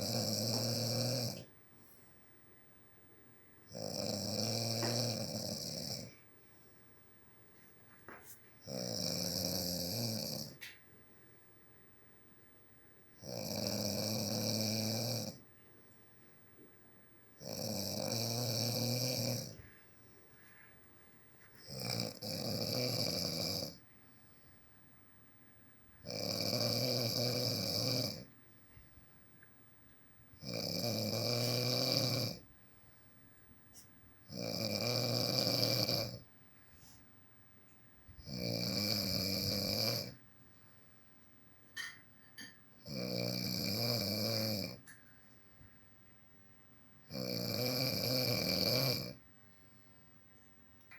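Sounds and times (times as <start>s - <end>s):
man snoring: 0.0s - 1.4s, 3.7s - 6.2s, 8.6s - 10.6s, 13.2s - 15.4s, 17.4s - 19.6s, 21.6s - 23.8s, 26.0s - 28.3s, 30.4s - 32.5s, 34.3s - 36.3s, 38.2s - 40.2s, 42.8s - 44.8s, 47.1s - 49.2s
quiet breathing: 0.0s - 2.7s, 3.5s - 11.6s, 15.4s - 17.3s, 18.7s - 42.9s, 49.0s - 50.4s.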